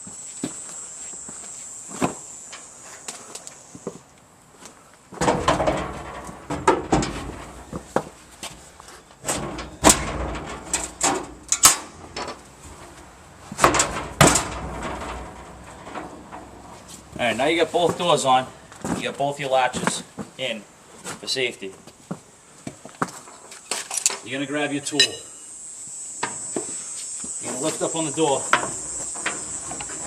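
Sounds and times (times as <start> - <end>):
metal doors knocking and clanking: 5.2 - 8.0, 9.2 - 12.4, 13.6 - 16.6.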